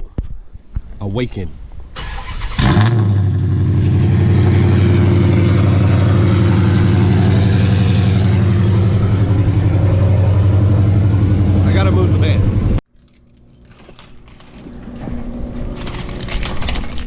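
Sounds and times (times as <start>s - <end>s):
car engine starting and idling: 1.9s - 12.8s.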